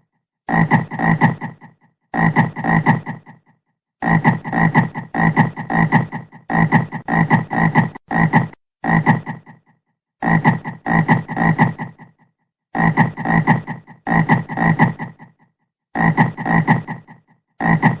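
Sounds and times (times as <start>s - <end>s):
frog croaking: 0.5s - 11.9s, 16.0s - 18.0s.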